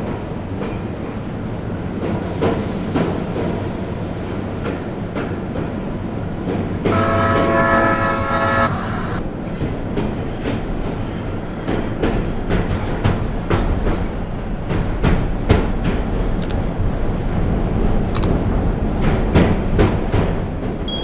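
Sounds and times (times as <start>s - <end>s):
train horn blast: 6.9s - 9.2s.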